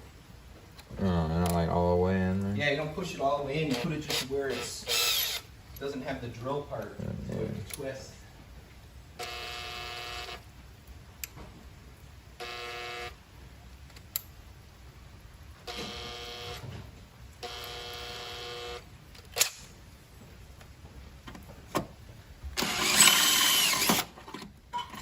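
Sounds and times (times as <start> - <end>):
electric drill drilling metal: 3.7 - 5.5, 22.6 - 24.2.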